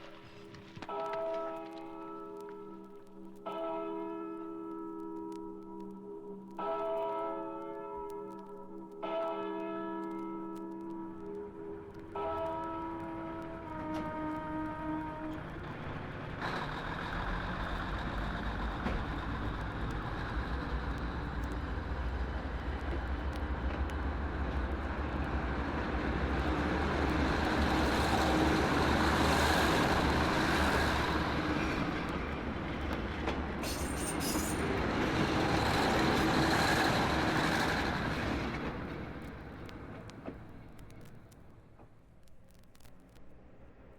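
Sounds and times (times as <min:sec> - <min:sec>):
rumbling vehicle noise: 0:14.5 - 0:42.2.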